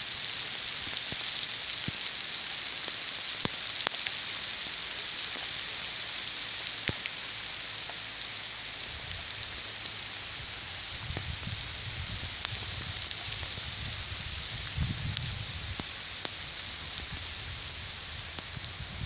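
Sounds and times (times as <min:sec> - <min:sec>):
steady rain falling: 0:00.0 - 0:19.0
sharp drip ticks: 0:00.8 - 0:06.0, 0:06.6 - 0:08.3.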